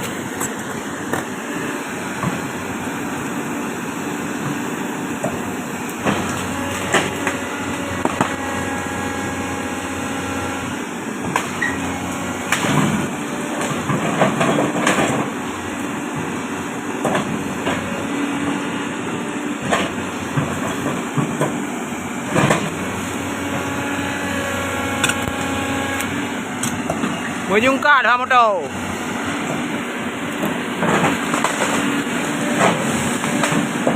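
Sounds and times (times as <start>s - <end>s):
excavator diesel engine under load: 0.0s - 33.9s
hydraulics whining: 0.0s - 33.9s
sharp knocks and cracks: 30.4s - 31.9s.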